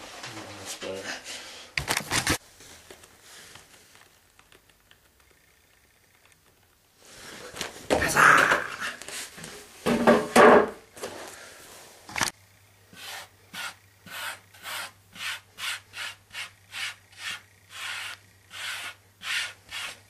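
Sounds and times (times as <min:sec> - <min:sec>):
hand sanding plastic putty: 0:12.9 - 0:20.0
loud scrape: 0:13.0 - 0:20.0.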